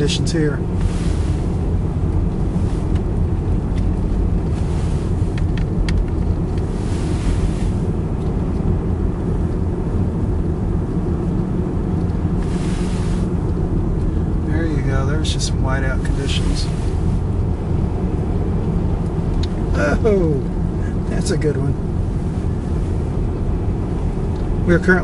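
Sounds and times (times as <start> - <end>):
vehicle driving rumble: 0.0 - 25.0
wind-driven snow hissing: 0.8 - 1.8, 6.7 - 7.9, 12.4 - 13.4, 16.0 - 17.2.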